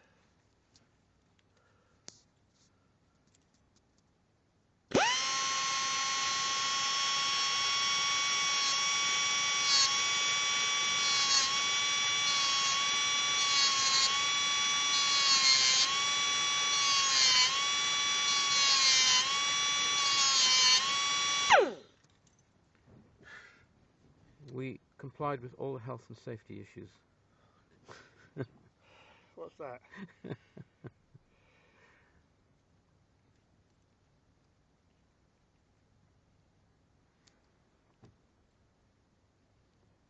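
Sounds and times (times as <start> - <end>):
electric drill whining: 4.9 - 21.9.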